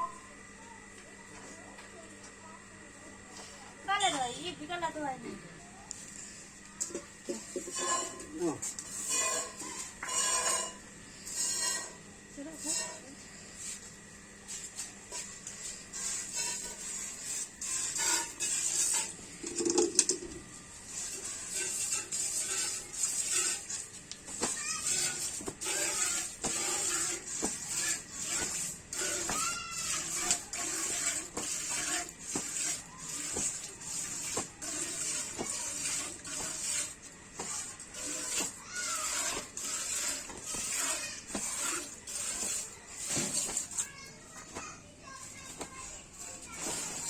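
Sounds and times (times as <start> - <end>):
milk squirting into a pail: 22.1 - 43.8.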